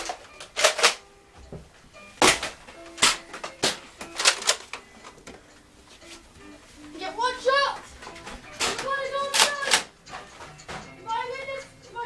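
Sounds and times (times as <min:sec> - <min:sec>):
toy dart blasters clacking: 0:08.6 - 0:09.9.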